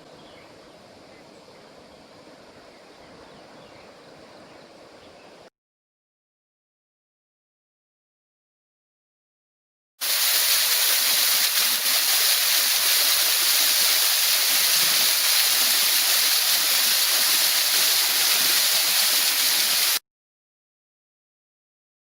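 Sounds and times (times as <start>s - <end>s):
waterfall rushing: 10.0s - 20.0s.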